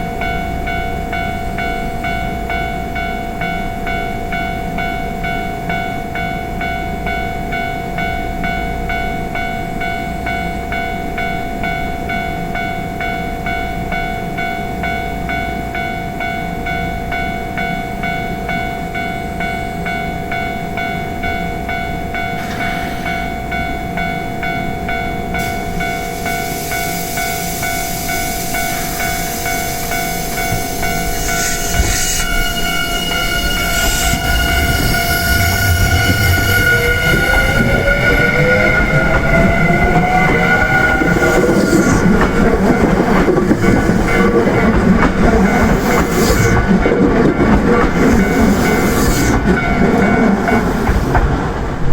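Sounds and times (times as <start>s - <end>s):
level-crossing alarm bell ringing: 0.0s - 51.4s
electric train approaching: 0.0s - 51.9s
train whine: 16.7s - 51.9s.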